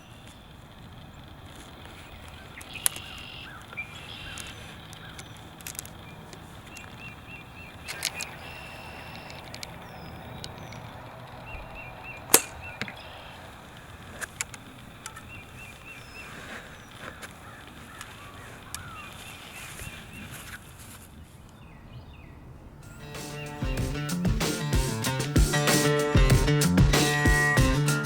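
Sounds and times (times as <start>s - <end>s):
sharp cracks: 0.0s - 19.8s
songbirds chirping: 0.0s - 26.3s.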